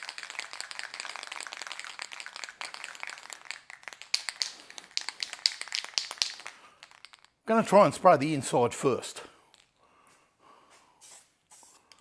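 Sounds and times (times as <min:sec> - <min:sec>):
spray can rattling when shaken: 0:00.0 - 0:07.4, 0:11.0 - 0:12.0.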